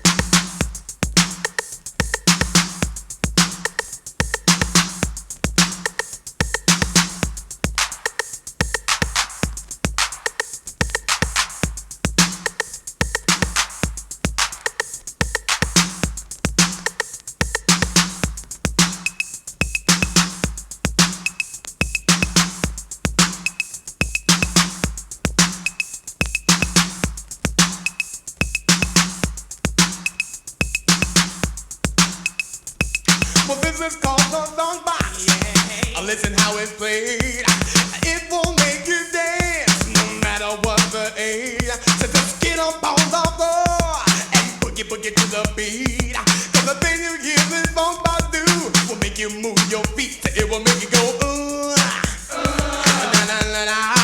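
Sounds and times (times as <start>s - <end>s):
drum machine beat: 0.0s - 54.0s
repeating bass riff: 39.6s - 40.6s.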